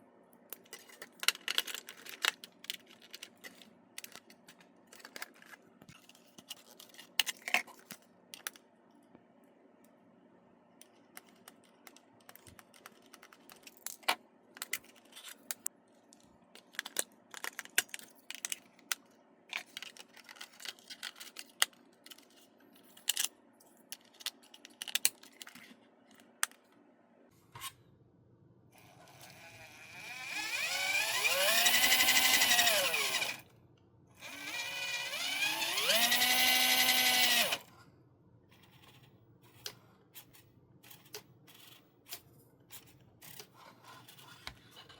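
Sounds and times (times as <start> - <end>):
plastic parts clicking and knocking: 0.5 - 8.7, 10.8 - 23.3, 23.9 - 26.7
small electric motor whirring: 28.8 - 33.5, 34.2 - 37.7.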